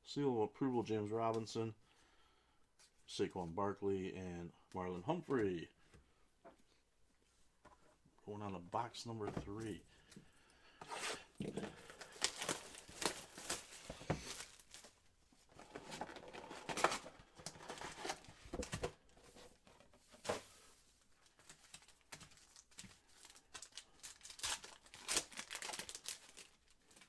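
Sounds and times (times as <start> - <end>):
packaging tearing and crumpling: 11.9 - 15.0, 21.3 - 27.0.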